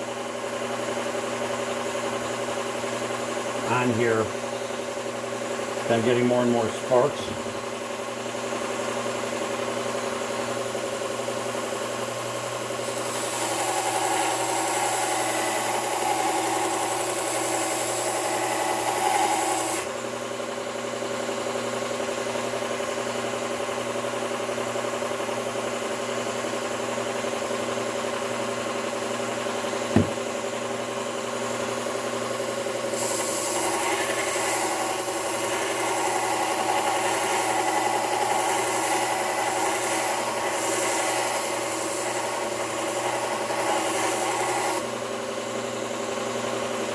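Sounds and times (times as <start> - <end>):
belt grinder grinding steel: 12.8 - 19.9, 32.9 - 44.9
sharp knock: 29.9 - 30.3.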